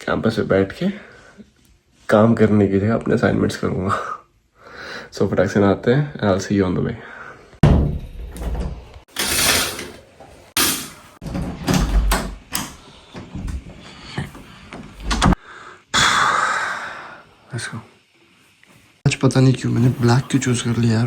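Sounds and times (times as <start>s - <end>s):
door or drawer knocks and thumps: 7.6s - 9.0s.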